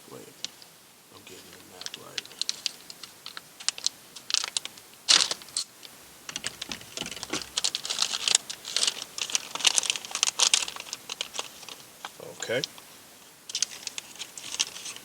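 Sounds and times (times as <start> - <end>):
packaging crinkling: 0.1 - 15.0
plastic parts clicking: 1.4 - 11.8, 13.5 - 15.0.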